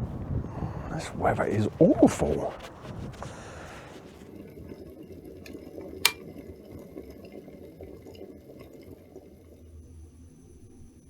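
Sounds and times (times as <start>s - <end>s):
rain pattering: 0.0s - 5.8s.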